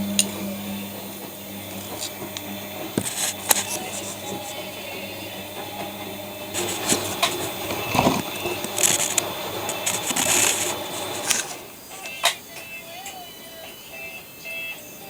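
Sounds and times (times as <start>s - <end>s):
washing machine clicks: 0.0s - 14.1s
washing machine humming: 0.0s - 15.0s.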